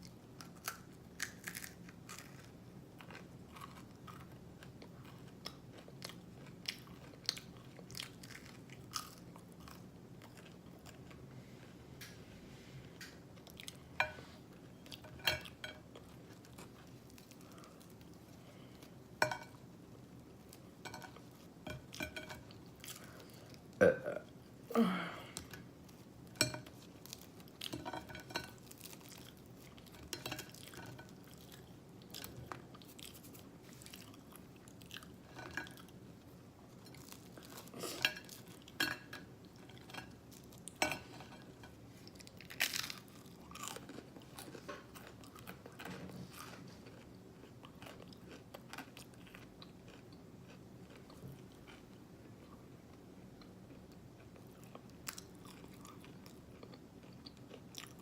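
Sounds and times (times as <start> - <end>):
chewing with mouth open: 42.0 - 51.9.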